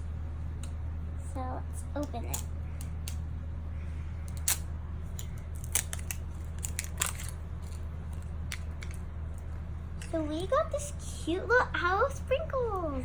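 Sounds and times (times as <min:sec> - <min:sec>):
plastic packaging crinkling: 0:05.2 - 0:09.0.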